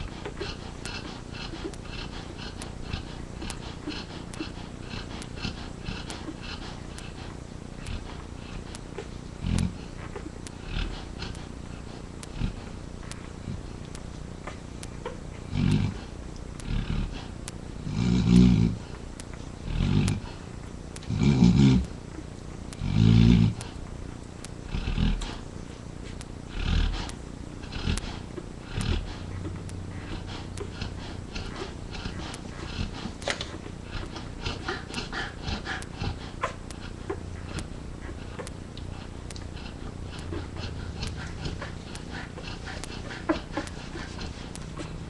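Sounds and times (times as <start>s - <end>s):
puppies suckling wet clicks: 0.0s - 45.0s
dog snoring: 9.4s - 12.8s, 15.4s - 18.9s, 19.6s - 20.4s, 21.1s - 21.9s, 22.8s - 23.8s, 24.7s - 25.4s, 26.5s - 45.0s.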